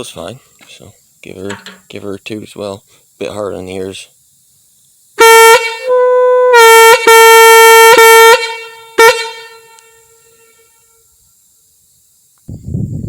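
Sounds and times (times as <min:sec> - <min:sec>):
air horn blasts: 0:05.2 - 0:11.0.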